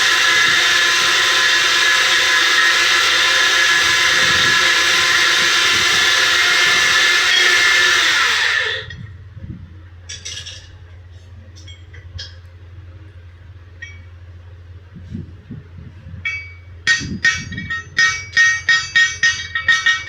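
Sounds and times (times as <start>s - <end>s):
electric motor running and spinning down: 0.0s - 9.1s.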